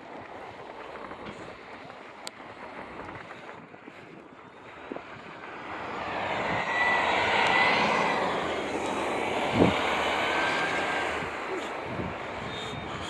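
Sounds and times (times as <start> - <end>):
aircraft passing overhead: 4.7 - 13.0.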